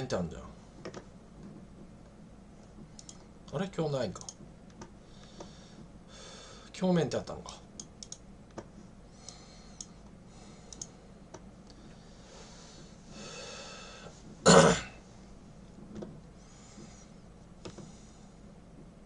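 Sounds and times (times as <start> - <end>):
faint clicks: 2.6 - 3.3, 7.8 - 10.1, 10.7 - 11.8
breath: 5.0 - 6.7, 9.2 - 11.1, 11.8 - 14.2, 16.4 - 18.4
man clearing his throat: 14.4 - 15.0.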